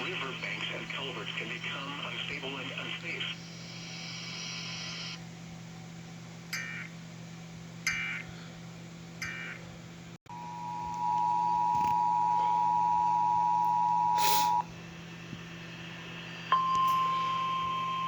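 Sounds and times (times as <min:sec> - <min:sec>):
screechy data burst: 0:03.3 - 0:05.2.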